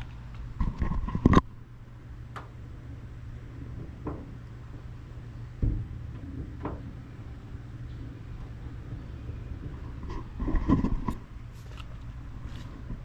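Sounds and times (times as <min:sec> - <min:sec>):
steady low hum: 0:00.0 - 0:13.0
dull thud: 0:05.6 - 0:07.0.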